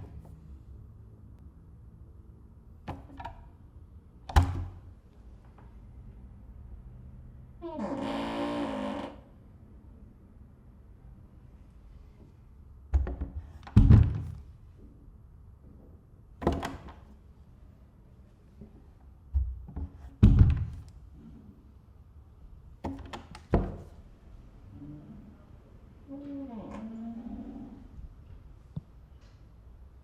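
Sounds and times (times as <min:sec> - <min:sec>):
door shutting with heavy thud: 0:13.0 - 0:14.4.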